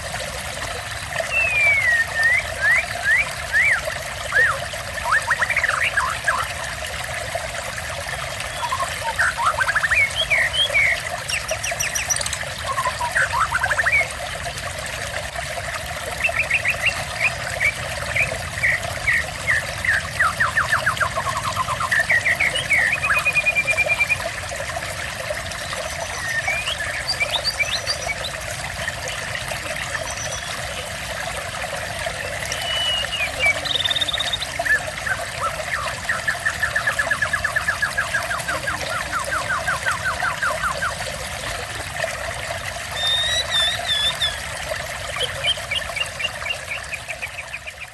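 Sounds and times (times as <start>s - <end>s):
running water: 0.0s - 47.9s
songbird singing: 1.3s - 6.5s, 8.5s - 14.1s, 16.2s - 24.2s, 25.6s - 30.6s, 32.4s - 41.0s, 43.0s - 44.4s, 45.2s - 47.9s.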